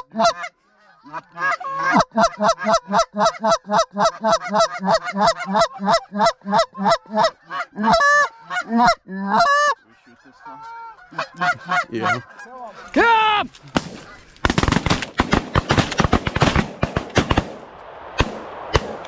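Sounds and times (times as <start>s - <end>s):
goose honking: 0.0s - 12.9s.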